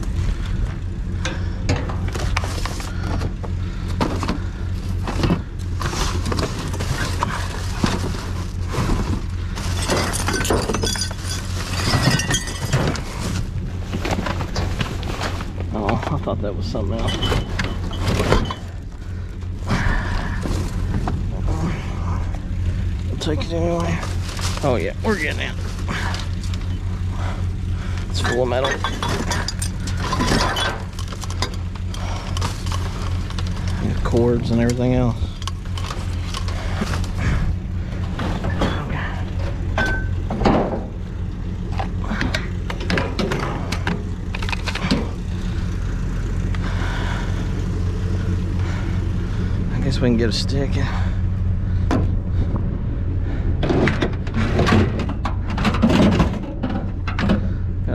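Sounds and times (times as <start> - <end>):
junk rattling and scraping: 0.0 - 57.9
steady low hum: 0.0 - 57.9
scrap metal clanking: 1.1 - 21.8, 28.0 - 41.1.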